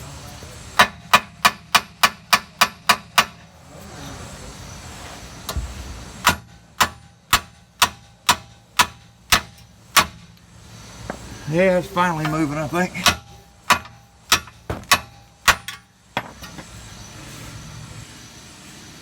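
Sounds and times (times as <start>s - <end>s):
hammer striking metal bolt: 0.8s - 3.4s, 6.2s - 10.3s, 13.0s - 16.6s
dull thump: 14.4s - 15.0s.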